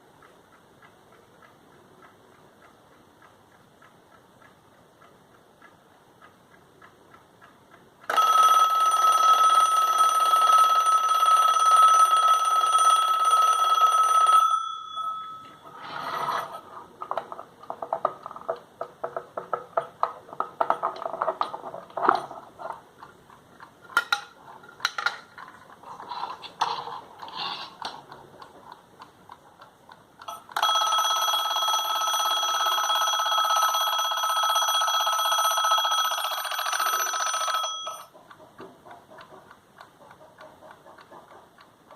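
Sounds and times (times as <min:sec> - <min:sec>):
alarm clock ticking: 0:00.0 - 0:25.5, 0:27.0 - 0:41.9
alarm clock bell ringing: 0:08.1 - 0:16.6, 0:30.3 - 0:38.1
irregular clicks and knocks: 0:16.6 - 0:30.8.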